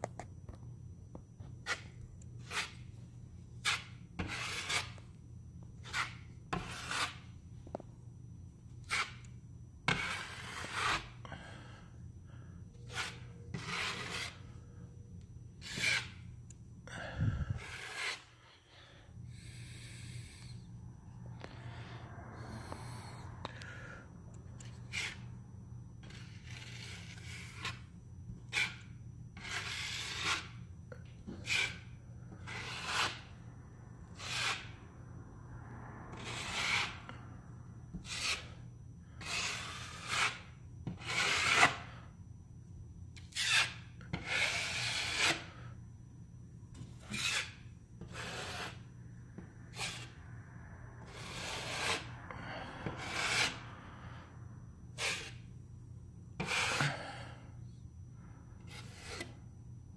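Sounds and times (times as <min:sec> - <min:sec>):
putty knife scraping compound: 0:01.4 - 0:02.9, 0:03.6 - 0:05.1, 0:05.7 - 0:07.3, 0:08.7 - 0:11.2, 0:12.8 - 0:14.6, 0:15.6 - 0:16.2, 0:17.4 - 0:20.6, 0:24.6 - 0:25.3, 0:26.0 - 0:33.4, 0:34.1 - 0:34.8, 0:36.1 - 0:37.2, 0:37.9 - 0:38.6, 0:39.2 - 0:42.0, 0:43.2 - 0:45.7, 0:46.7 - 0:48.9, 0:49.7 - 0:50.2, 0:51.0 - 0:52.1, 0:52.7 - 0:53.6, 0:54.9 - 0:55.5, 0:56.4 - 0:57.4, 0:58.6 - 0:59.5.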